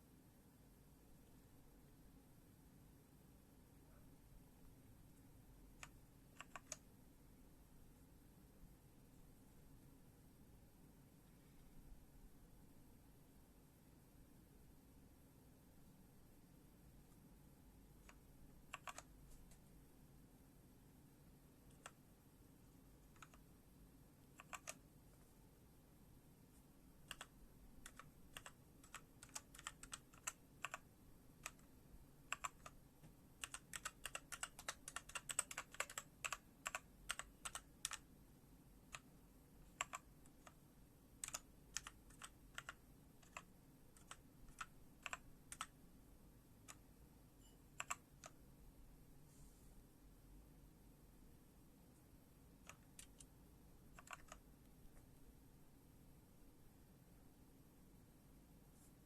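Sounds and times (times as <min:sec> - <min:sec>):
mechanical keyboard keystrokes: 0:05.8 - 0:06.8, 0:18.0 - 0:19.1, 0:23.2 - 0:23.4, 0:24.4 - 0:24.8, 0:27.1 - 0:30.8, 0:32.3 - 0:32.8, 0:33.4 - 0:38.0, 0:39.8 - 0:40.6, 0:41.2 - 0:45.7, 0:47.8 - 0:48.3, 0:53.9 - 0:54.4.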